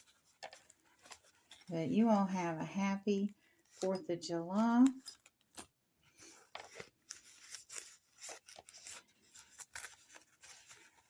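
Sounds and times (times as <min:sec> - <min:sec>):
paper packaging rustling: 0:00.0 - 0:01.8, 0:04.8 - 0:11.0.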